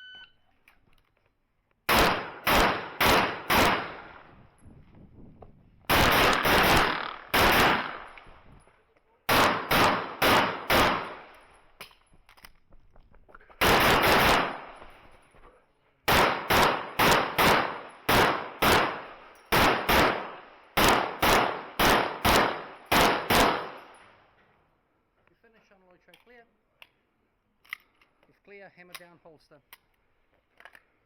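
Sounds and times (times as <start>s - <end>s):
handgun shots: 1.9s - 4.2s, 5.9s - 8.3s, 9.3s - 11.2s, 16.1s - 24.0s.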